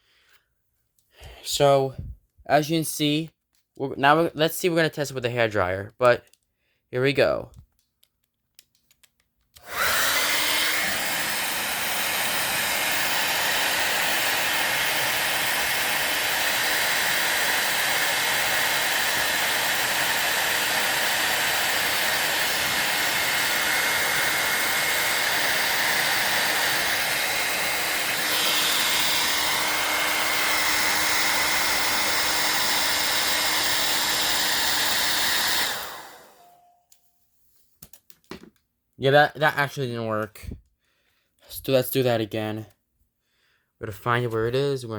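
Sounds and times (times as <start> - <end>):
hair dryer running: 9.6 - 36.6.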